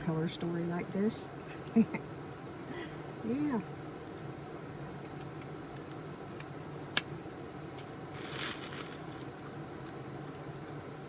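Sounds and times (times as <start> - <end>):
low room hum: 0.0 - 11.0
packaging rustle: 8.2 - 9.3.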